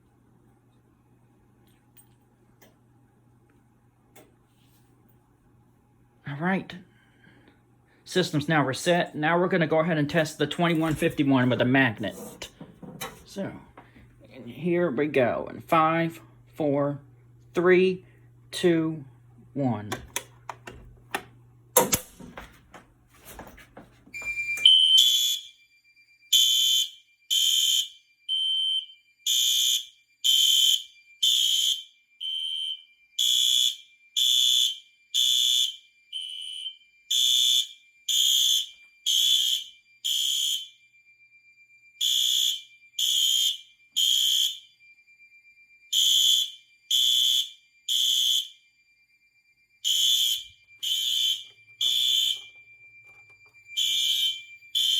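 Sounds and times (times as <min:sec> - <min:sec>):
clicks: 0:19.9 - 0:22.9
fire alarm horn blasts: 0:24.1 - 0:54.9.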